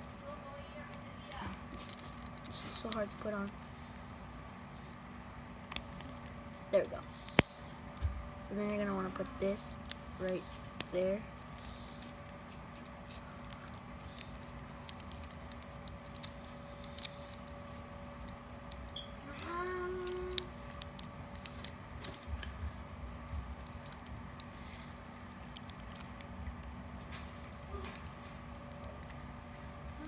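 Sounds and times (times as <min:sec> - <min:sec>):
plastic bricks clicking: 0:13.4 - 0:22.3, 0:23.4 - 0:26.7.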